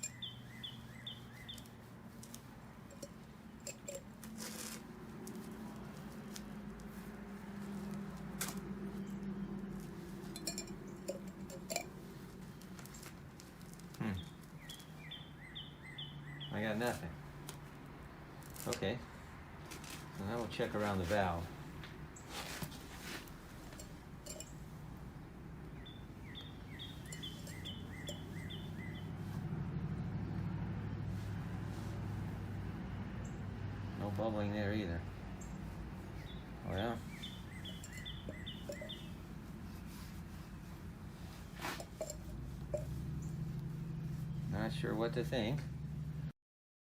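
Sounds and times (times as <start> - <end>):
bird chirping: 0.0 - 1.8, 14.0 - 16.7, 25.7 - 29.2, 35.4 - 39.3
handling clicks and clinks: 0.0 - 6.9, 9.7 - 15.0, 22.4 - 24.9, 26.2 - 28.6, 37.0 - 39.4, 41.5 - 43.3.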